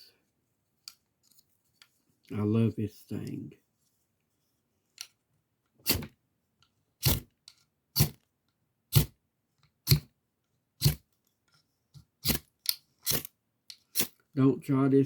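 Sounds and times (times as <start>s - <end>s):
striker scraping fire starter rod: 12.2s - 13.3s, 13.9s - 14.2s.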